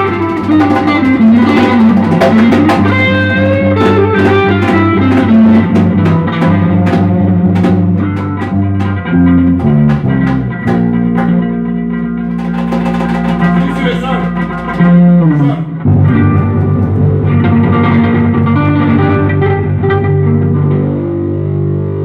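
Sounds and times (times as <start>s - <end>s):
band playing samba-reggae music: 0.0s - 11.4s, 12.3s - 18.0s
drum strokes: 0.0s - 19.5s
guitar: 0.0s - 22.0s.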